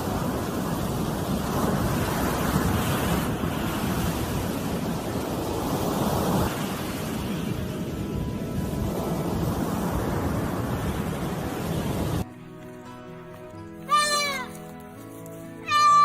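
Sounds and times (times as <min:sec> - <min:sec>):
ocean surf washing on shore: 0:00.0 - 0:12.3
wind on microphone: 0:00.0 - 0:12.3.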